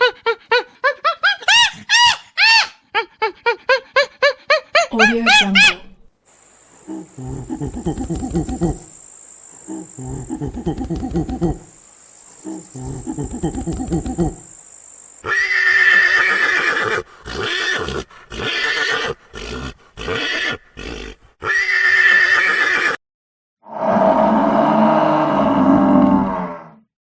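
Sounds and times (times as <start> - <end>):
horse whinnying: 15.3 - 23.0
deep roar-like call: 23.7 - 26.9.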